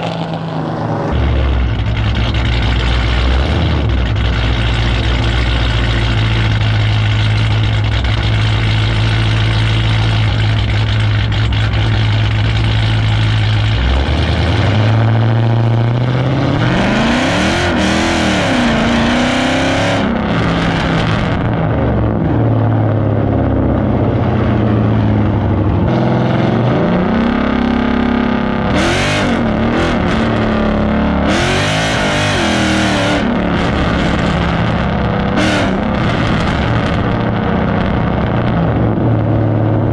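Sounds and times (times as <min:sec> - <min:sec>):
car exhaust droning and revving: 0:00.0 - 0:39.9.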